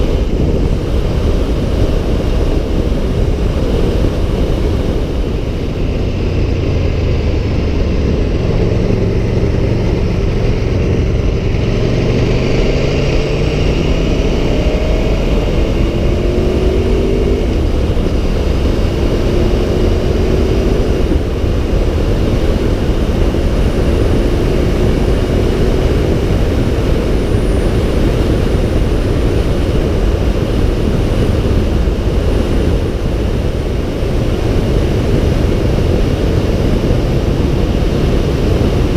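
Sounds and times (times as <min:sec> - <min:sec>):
motorcycle engine accelerating: 0:00.0 - 0:38.9
wind rush on microphone: 0:00.0 - 0:38.9.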